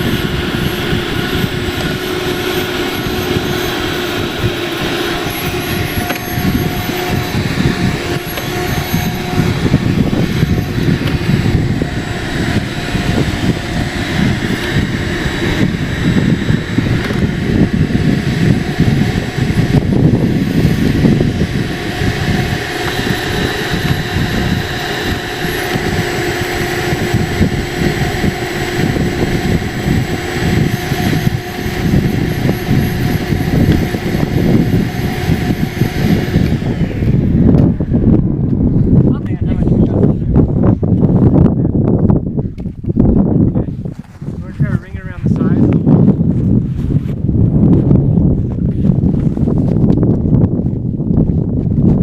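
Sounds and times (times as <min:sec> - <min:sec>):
rush of air: 0:00.0 - 0:52.0
vacuum motor whine: 0:00.0 - 0:52.0.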